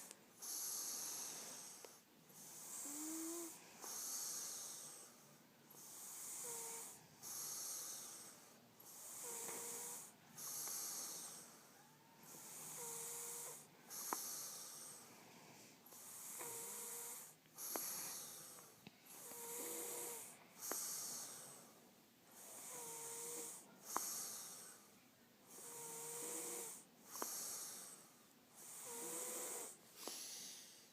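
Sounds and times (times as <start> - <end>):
man snoring with whistle: 0.4 - 1.7, 2.6 - 5.0, 5.8 - 8.2, 9.0 - 11.4, 12.2 - 14.7, 16.1 - 18.3, 19.3 - 21.4, 22.5 - 24.4, 25.6 - 27.8, 28.6 - 30.5.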